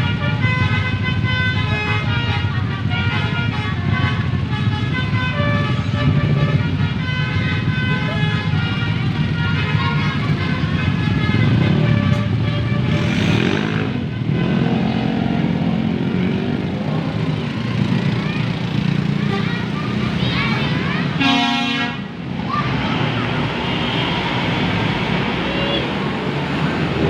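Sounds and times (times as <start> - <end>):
bus musical horn melody: 0.0 - 15.0, 19.0 - 20.1, 20.8 - 22.2
diesel engine running: 0.2 - 21.2.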